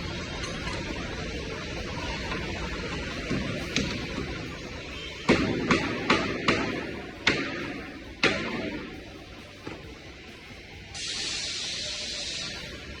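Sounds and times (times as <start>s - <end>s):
sharp strikes on wood: 5.3s - 8.9s.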